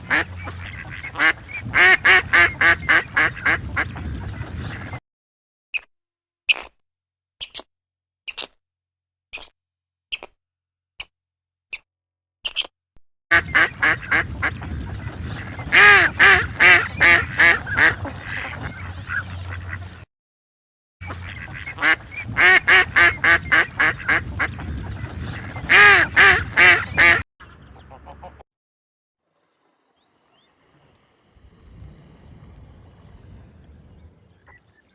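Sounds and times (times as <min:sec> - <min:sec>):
ducks quacking: 0:00.0 - 0:05.0, 0:13.3 - 0:19.9, 0:21.0 - 0:28.4.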